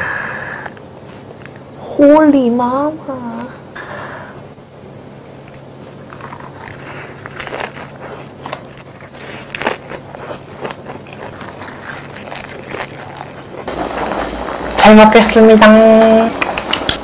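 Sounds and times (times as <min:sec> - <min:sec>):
crunching food while eating: 0:06.0 - 0:14.8.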